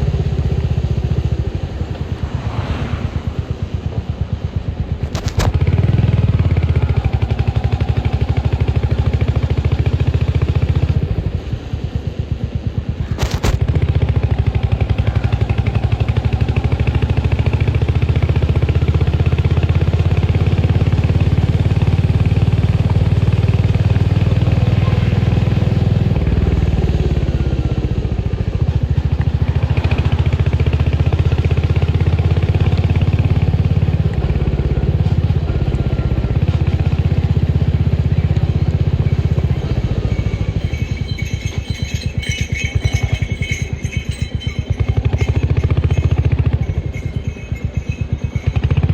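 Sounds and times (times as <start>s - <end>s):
motorcycle engine thumping: 5.0s - 5.9s, 13.0s - 14.0s.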